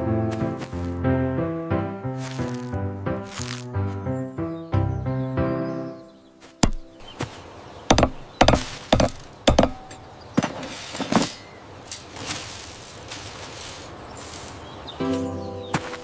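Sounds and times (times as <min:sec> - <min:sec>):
sharp knocks: 0:06.6 - 0:07.1, 0:07.9 - 0:11.4.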